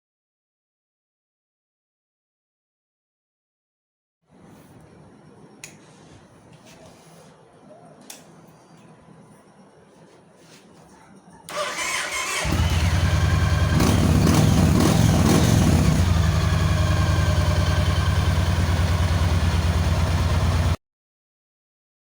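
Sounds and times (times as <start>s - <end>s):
starter motor cranking: 11.5s - 14.4s
motorcycle engine running: 12.1s - 20.8s.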